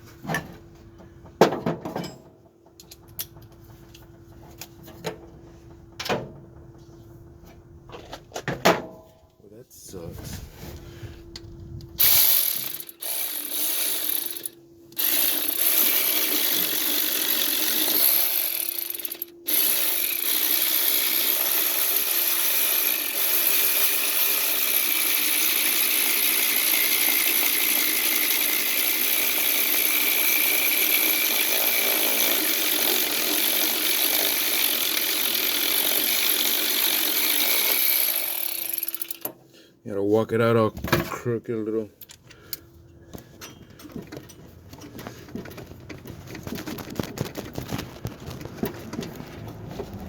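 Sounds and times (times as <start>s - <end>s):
electric ratchet running: 12.0s - 39.3s.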